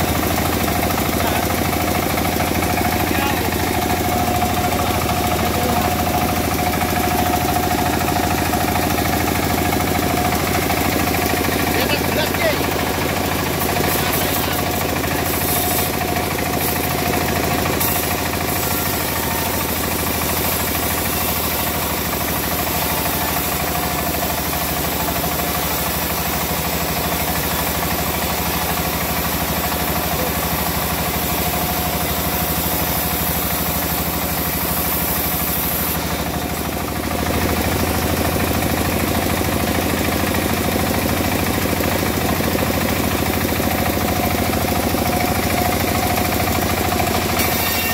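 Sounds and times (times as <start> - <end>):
saw engine knocking: 0.0 - 47.9.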